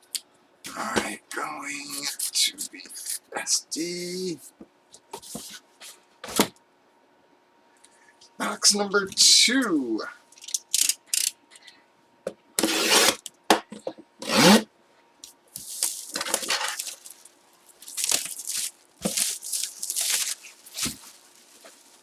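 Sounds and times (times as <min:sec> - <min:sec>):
cardboard box rustling: 0:17.8 - 0:22.0.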